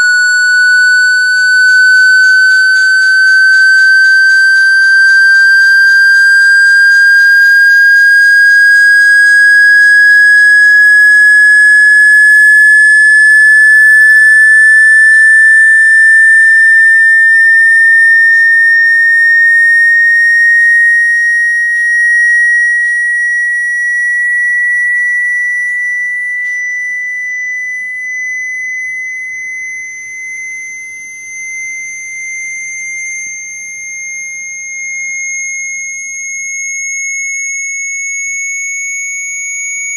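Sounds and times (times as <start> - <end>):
electronic sine tone rising in pitch: 0.0 - 29.8, 31.6 - 39.9.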